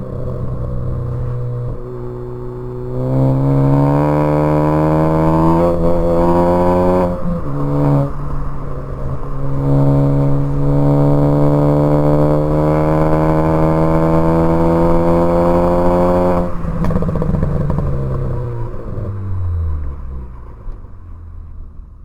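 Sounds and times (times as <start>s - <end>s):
car engine accelerating: 0.0s - 22.0s
exhaust crackles and pops: 12.2s - 22.0s.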